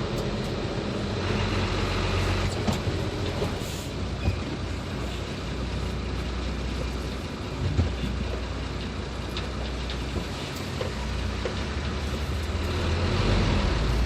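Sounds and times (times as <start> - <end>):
truck engine drone: 0.0 - 14.0.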